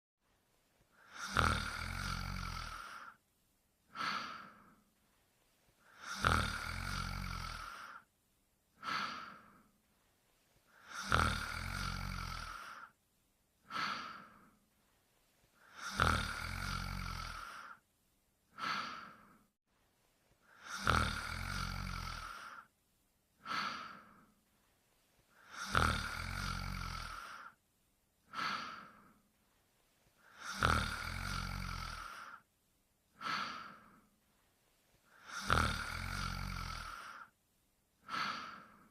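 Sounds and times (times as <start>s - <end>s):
cartoon snoring: 1.0s - 3.2s, 5.9s - 8.1s, 10.8s - 13.0s, 15.6s - 17.8s, 20.5s - 22.7s, 25.4s - 27.6s, 30.2s - 32.4s, 35.1s - 37.3s, 38.0s - 38.9s.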